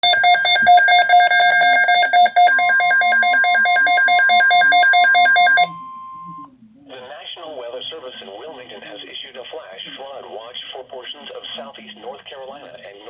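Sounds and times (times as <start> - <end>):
alarm beeper warbling: 0.0 - 6.5.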